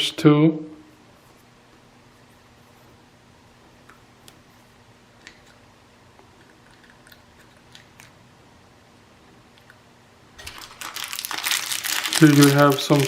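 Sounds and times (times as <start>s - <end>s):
packaging crinkling: 10.4s - 13.0s.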